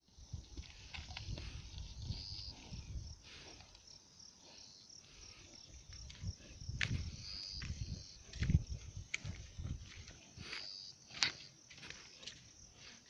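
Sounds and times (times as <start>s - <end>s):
insects chirping: 0.1s - 13.0s
low scuffles and thumps: 5.8s - 10.5s.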